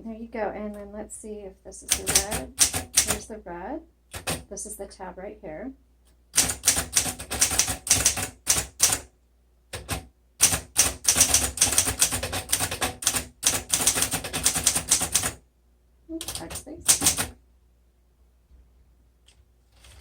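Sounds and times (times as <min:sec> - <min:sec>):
manual typewriter keys clicking: 0:01.9 - 0:03.2, 0:06.4 - 0:09.0, 0:09.8 - 0:15.4, 0:16.2 - 0:17.3.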